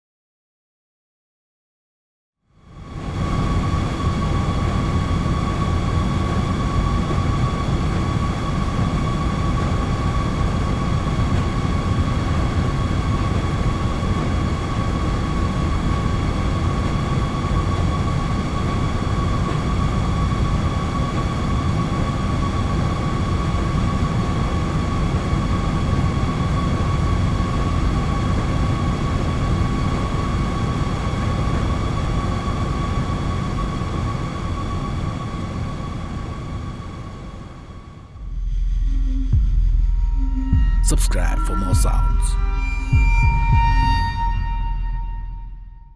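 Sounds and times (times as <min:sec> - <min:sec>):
high-pitched hum: 0:36.9 - 0:45.9
machinery low rumble: 0:37.3 - 0:45.9.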